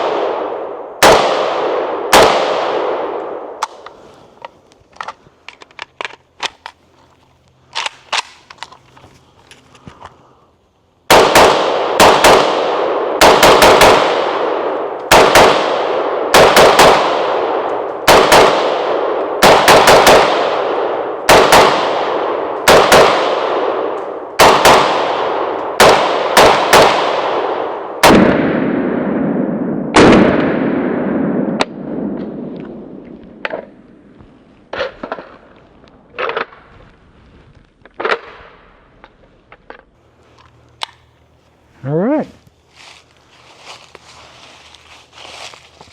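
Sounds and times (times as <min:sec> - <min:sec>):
rifle shots echoing: 0:00.0 - 0:04.0, 0:11.1 - 0:34.1.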